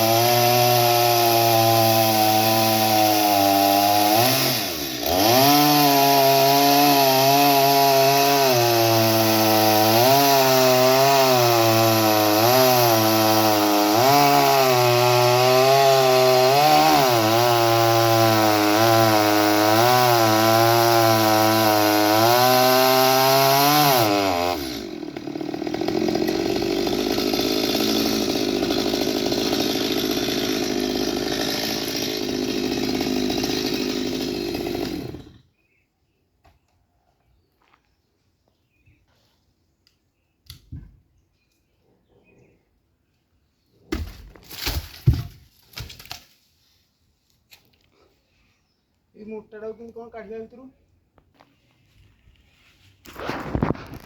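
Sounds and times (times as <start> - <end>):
chainsaw cutting log: 0.0 - 35.5, 43.9 - 46.2, 53.0 - 54.0.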